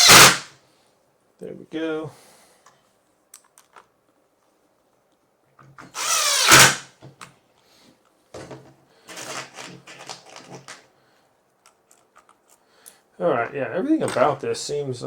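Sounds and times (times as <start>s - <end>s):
cordless drill whining: 0.0s - 0.4s, 5.9s - 6.8s.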